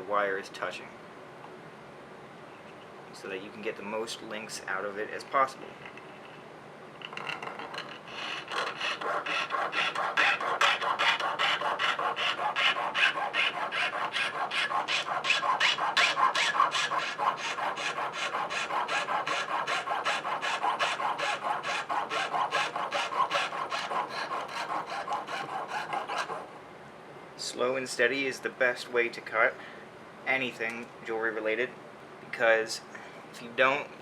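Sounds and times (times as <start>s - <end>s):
saw rasping through wire: 7.4s - 26.5s.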